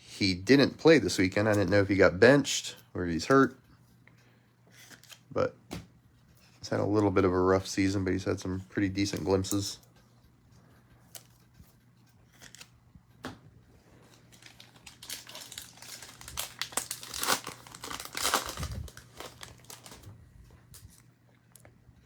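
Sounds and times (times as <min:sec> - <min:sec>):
wrapper tearing and crinkling: 0:14.1 - 0:20.1.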